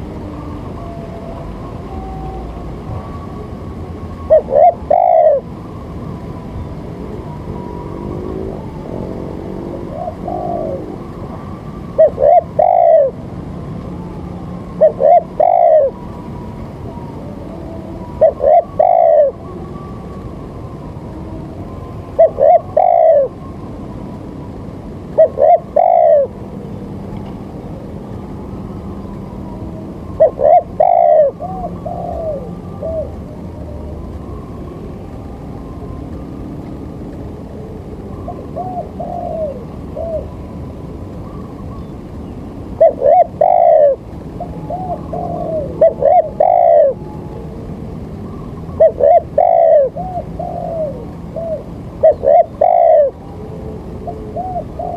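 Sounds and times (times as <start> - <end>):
bird calling low notes: 4.2 - 5.5, 12.0 - 13.2, 14.7 - 16.1, 16.8 - 19.5, 22.1 - 23.4, 25.1 - 26.4, 28.0 - 35.0, 37.5 - 54.9.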